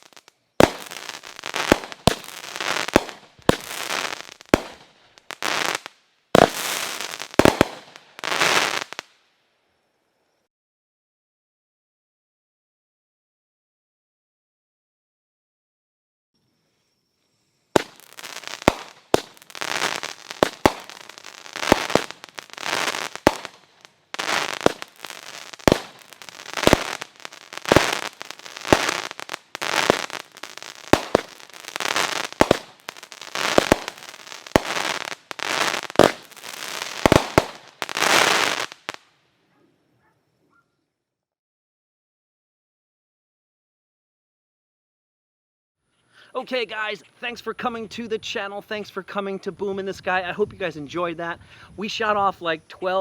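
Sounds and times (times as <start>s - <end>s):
firework crackling: 0.0s - 9.2s, 17.7s - 39.1s
firework launch thumps: 17.8s - 19.5s, 20.4s - 21.0s, 22.8s - 23.6s, 24.6s - 25.0s, 25.6s - 27.1s, 30.9s - 31.4s, 32.3s - 32.8s, 35.9s - 36.3s.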